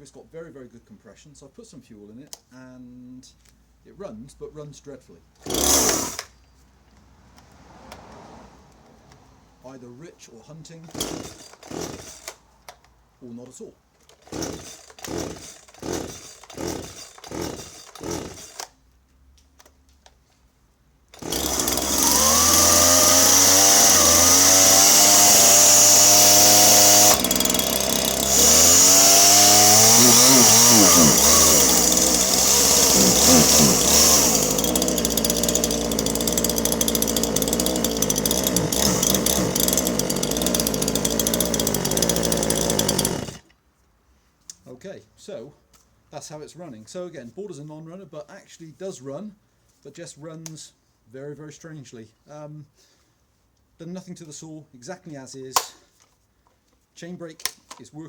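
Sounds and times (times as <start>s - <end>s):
chainsaw engine revving: 5.4s - 6.3s, 10.9s - 12.4s, 14.2s - 18.7s, 21.1s - 43.5s
starter cord pulls: 5.4s - 6.3s, 10.9s - 12.9s, 14.0s - 18.7s, 21.1s - 43.5s.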